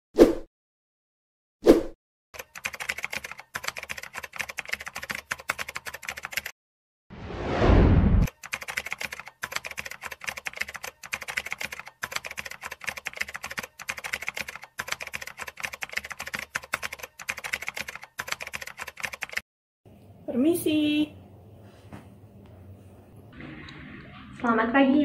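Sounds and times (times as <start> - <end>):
rapid keyboard typing: 2.4 - 6.5, 8.3 - 19.4
loud whooshing: 7.1 - 8.3.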